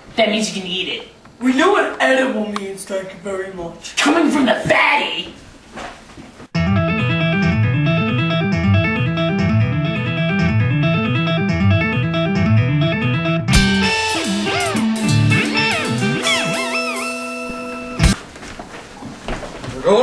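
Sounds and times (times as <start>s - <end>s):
music with plucked guitar: 6.6s - 18.2s
swooping gliding tones: 13.6s - 18.1s.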